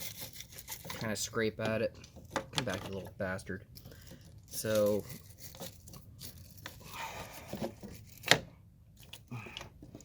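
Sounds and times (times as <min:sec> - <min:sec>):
wire brush scraping metal: 0:00.0 - 0:01.3.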